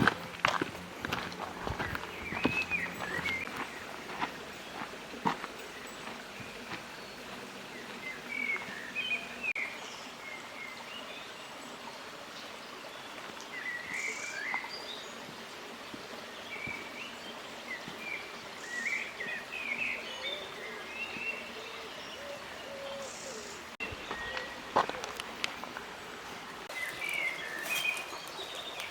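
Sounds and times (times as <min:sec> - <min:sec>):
birds chirping: 0:00.0 - 0:28.9.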